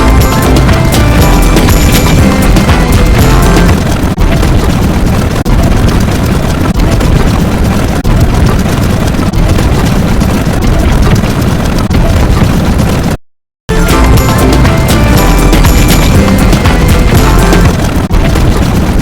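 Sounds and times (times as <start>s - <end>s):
loud distorted noise: 0.0s - 5.7s, 13.7s - 19.0s.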